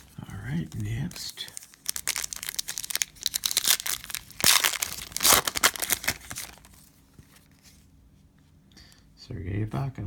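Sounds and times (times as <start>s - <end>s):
cellophane wrapper crinkling: 0.0s - 7.5s.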